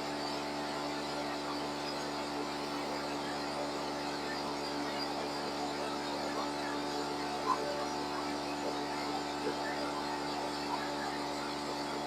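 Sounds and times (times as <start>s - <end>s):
milling machine humming: 0.0s - 12.0s.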